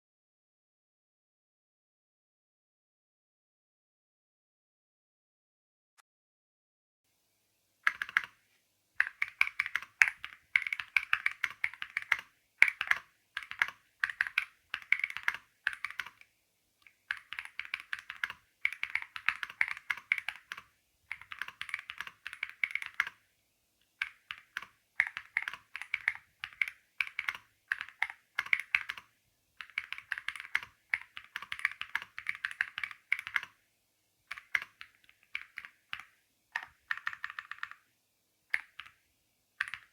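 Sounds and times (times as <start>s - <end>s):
typing on mechanical keyboard: 7.8s - 8.4s, 9.0s - 23.2s, 24.0s - 33.6s, 34.3s - 37.9s, 38.5s - 39.0s, 39.6s - 39.9s.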